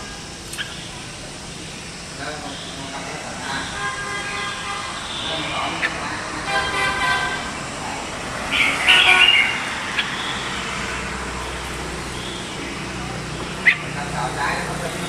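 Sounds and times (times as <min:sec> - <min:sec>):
bird chirping: 0:00.0 - 0:15.0
traffic hum: 0:00.0 - 0:15.0
buzzy horn toot: 0:02.6 - 0:12.9.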